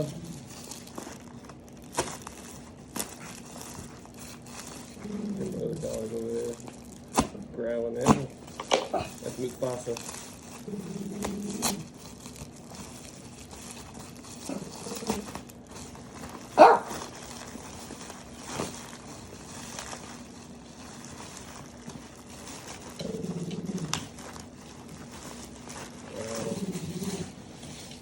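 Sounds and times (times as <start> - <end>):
dog growling: 0.0 - 0.7, 4.8 - 6.6, 10.4 - 12.1, 14.2 - 15.5, 22.5 - 27.9
dog barking: 16.6 - 17.0.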